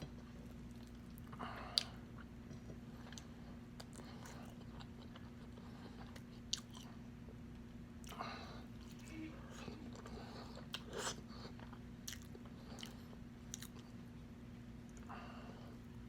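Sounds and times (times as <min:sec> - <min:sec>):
close chewing and biting: 0:00.0 - 0:07.0, 0:08.8 - 0:14.0
steady low hum: 0:00.0 - 0:16.0.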